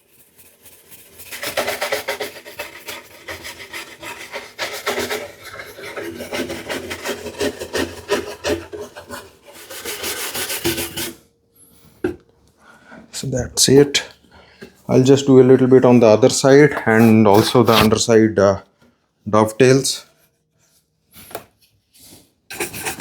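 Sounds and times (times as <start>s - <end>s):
shoe brush buffing wood: 16.8s - 18.0s.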